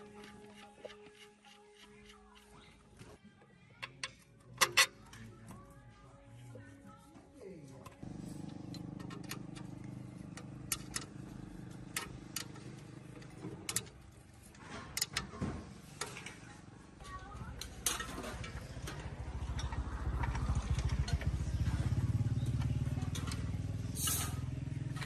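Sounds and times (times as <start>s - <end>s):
small engine throbbing: 8.0s - 13.6s, 17.8s - 25.0s
sharp clicks and knocks: 8.4s - 16.4s.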